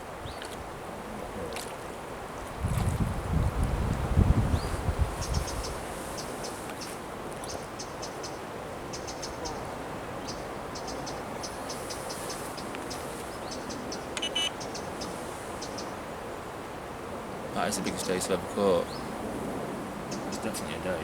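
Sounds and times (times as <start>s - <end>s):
river water rushing: 5.8s - 21.0s
high chirping: 13.4s - 15.9s.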